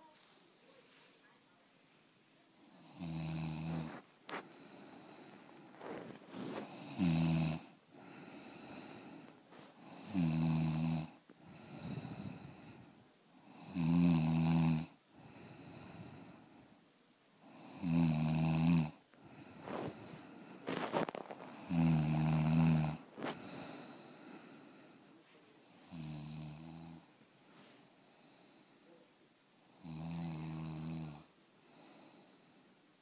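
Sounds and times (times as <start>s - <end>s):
quiet breathing: 2.4s - 33.0s
person snoring: 2.7s - 16.4s, 17.4s - 24.9s, 25.7s - 27.1s, 29.7s - 32.3s.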